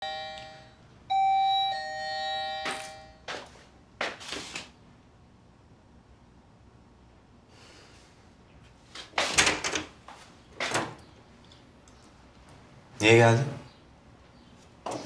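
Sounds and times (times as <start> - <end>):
two-tone doorbell chime: 0.0 - 3.4.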